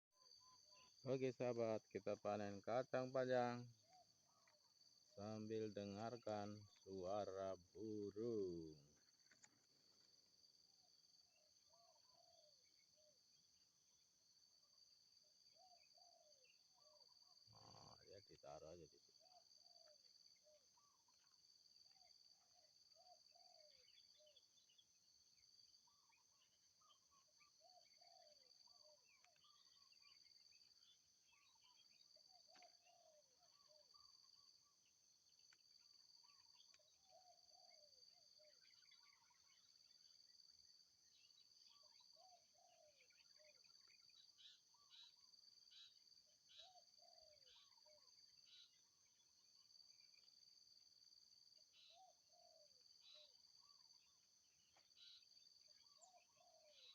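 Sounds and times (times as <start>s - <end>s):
low bird phrase: 0.7s - 4.5s, 5.2s - 9.1s, 15.6s - 19.9s.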